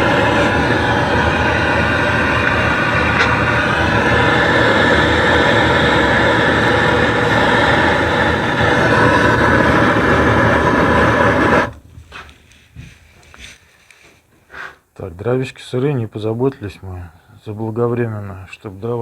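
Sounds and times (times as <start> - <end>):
mechanical rushing noise: 0.0 - 11.8
faint steady whine: 0.0 - 19.0.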